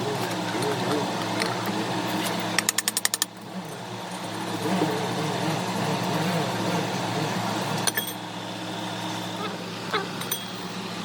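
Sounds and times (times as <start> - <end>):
low machine hum: 0.0 - 11.0
sharp metallic clicks: 2.6 - 3.4.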